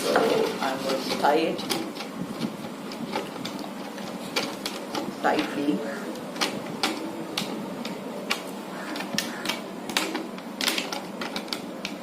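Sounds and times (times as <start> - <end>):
plastic bottle clicks and crackles: 6.4 - 12.0.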